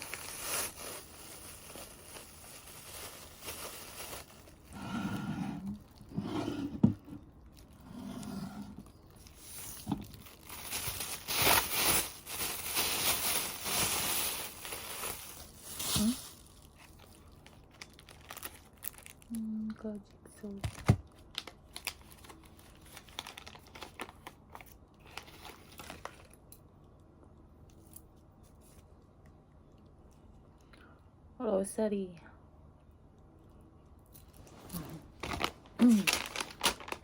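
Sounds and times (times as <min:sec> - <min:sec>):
plastic packaging crinkling: 0:00.0 - 0:04.8, 0:08.8 - 0:19.5, 0:20.4 - 0:26.4, 0:34.3 - 0:37.0
plastic tearing: 0:00.0 - 0:04.8, 0:09.2 - 0:19.3, 0:20.6 - 0:26.3, 0:35.0 - 0:37.0.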